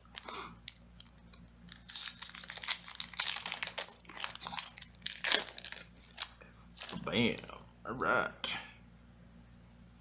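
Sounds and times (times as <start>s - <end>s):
foil wrapper rustling and tearing: 0.1s - 7.5s.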